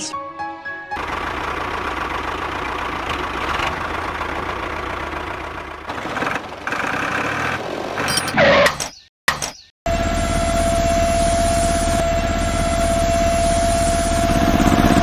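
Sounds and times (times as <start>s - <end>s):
tractor engine idling: 1.0s - 8.1s.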